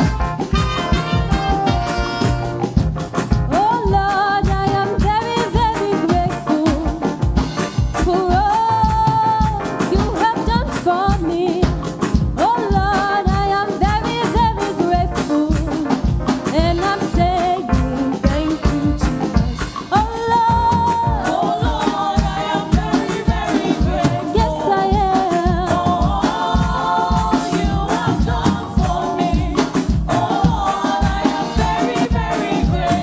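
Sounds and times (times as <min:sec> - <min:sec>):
band with driving beat: 0:00.0 - 0:33.0
person singing with vibrato: 0:03.5 - 0:07.2, 0:12.4 - 0:33.0.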